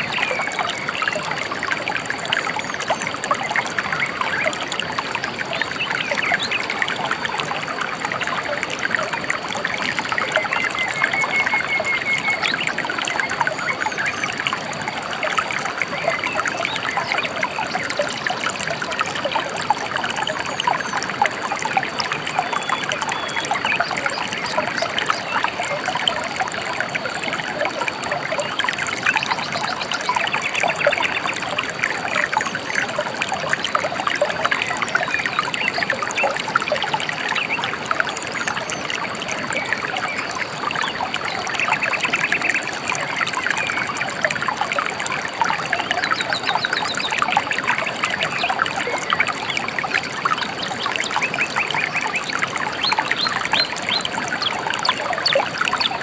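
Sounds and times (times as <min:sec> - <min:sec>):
river trickling and babbling: 0:00.0 - 0:56.0
faint bird chirps: 0:10.2 - 0:14.6.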